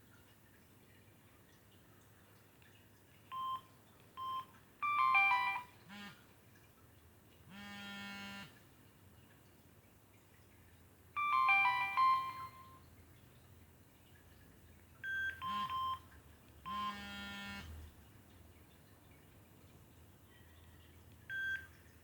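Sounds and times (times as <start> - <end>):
phone ringtone tones: 3.3 - 3.6, 4.2 - 6.2, 11.2 - 12.8, 15.0 - 16.0, 16.7 - 17.7, 21.3 - 21.6
pitched beeping notes: 4.8 - 5.7, 11.2 - 12.8.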